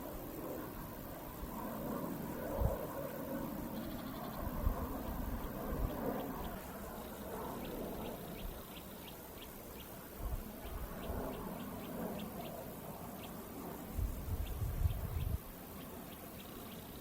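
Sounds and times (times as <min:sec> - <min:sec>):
small bird chirping: 0:03.6 - 0:17.0.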